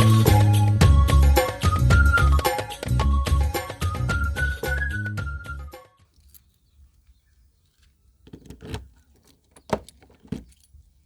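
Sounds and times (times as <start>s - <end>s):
faint clicks and knocks: 6.2s - 10.9s.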